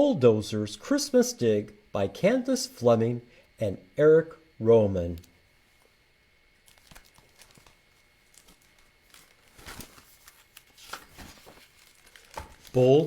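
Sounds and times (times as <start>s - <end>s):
paper pages rustling: 6.6s - 13.0s.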